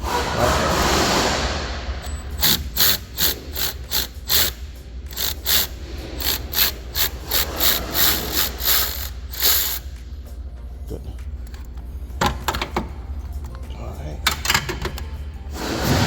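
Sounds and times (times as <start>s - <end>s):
ratchet wrench clicking: 2.0s - 10.1s.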